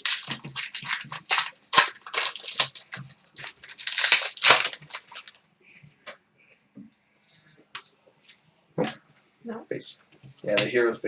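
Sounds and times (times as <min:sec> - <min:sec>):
card packaging crinkling: 0:00.0 - 0:05.4.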